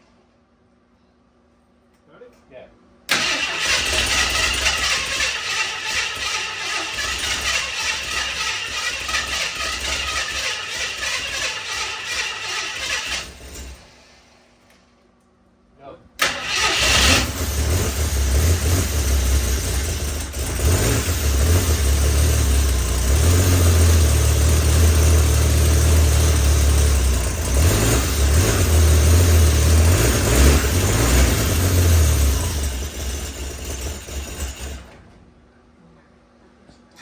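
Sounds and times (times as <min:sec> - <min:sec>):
engine running unevenly: 0:17.1 - 0:35.2.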